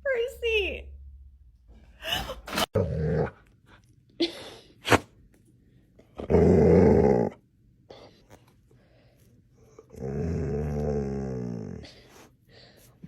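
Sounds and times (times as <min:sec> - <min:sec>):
dog growling: 0:02.7 - 0:03.4, 0:06.2 - 0:07.4, 0:09.8 - 0:12.2.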